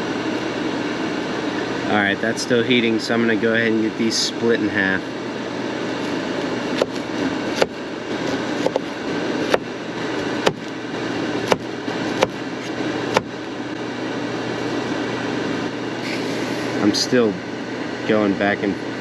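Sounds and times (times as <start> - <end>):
air fryer fan whirring: 0.0 - 19.0
knife chopping on cutting board: 6.0 - 9.7, 10.4 - 10.7, 11.4 - 13.3.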